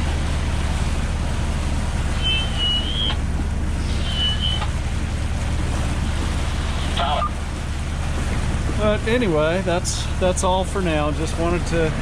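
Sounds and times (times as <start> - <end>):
boat engine droning: 0.0 - 12.0
water noise: 0.0 - 12.0
wind: 0.0 - 12.0
short high-pitched tones: 2.1 - 3.2, 3.8 - 4.7.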